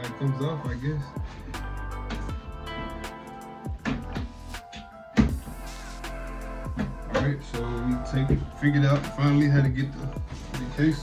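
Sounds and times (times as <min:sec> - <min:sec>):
held synth notes: 0:00.0 - 0:11.0
heavy bass drum hits: 0:05.3 - 0:10.6.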